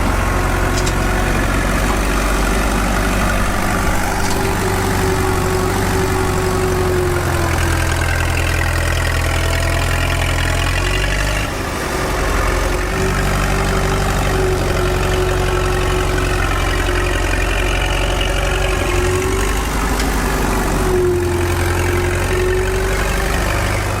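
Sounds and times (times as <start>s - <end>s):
small tractor engine running: 0.0s - 24.0s.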